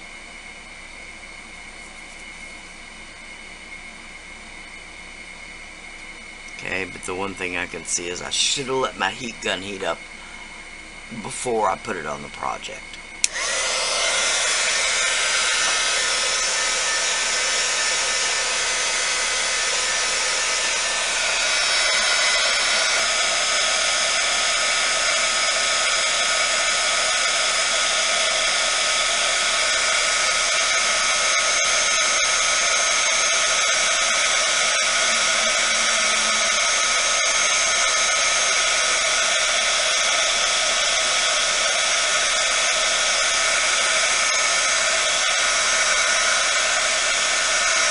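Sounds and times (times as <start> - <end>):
heat gun blowing with fan whine: 0.0 - 47.9.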